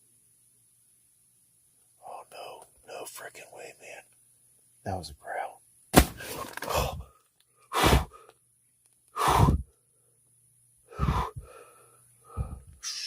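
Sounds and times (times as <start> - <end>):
man breathing heavily and gasping: 6.2 - 8.4, 9.1 - 9.8, 10.9 - 13.0.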